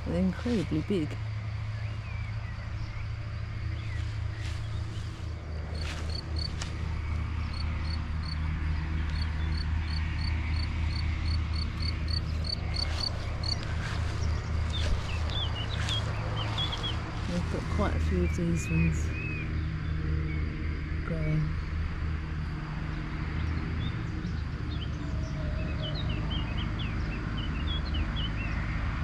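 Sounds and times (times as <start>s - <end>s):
birds chirping: 0.0s - 21.8s, 22.4s - 28.8s
steady low rumble: 0.0s - 29.0s.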